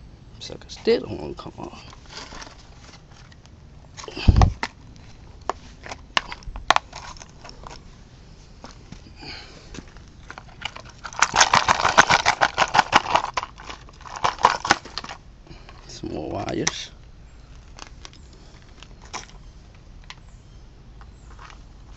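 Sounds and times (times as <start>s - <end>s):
plastic crackling and snapping: 9.9s - 15.2s, 16.4s - 19.4s.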